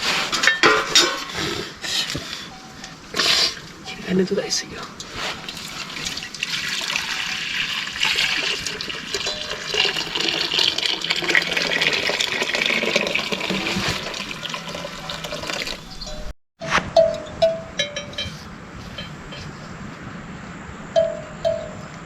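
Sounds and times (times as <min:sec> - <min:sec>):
liquid pouring and splashing: 0:05.0 - 0:16.0.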